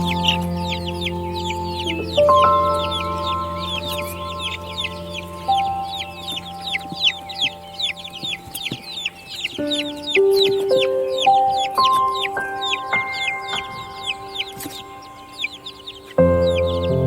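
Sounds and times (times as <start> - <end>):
low drone: 0.0 - 11.5
baby chicks peeping: 0.0 - 17.0
soft background music: 0.0 - 17.0.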